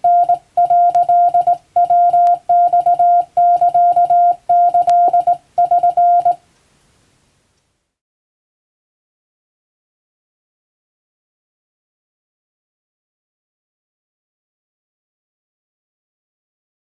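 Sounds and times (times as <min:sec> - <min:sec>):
morse code beeping: 0:00.0 - 0:06.4.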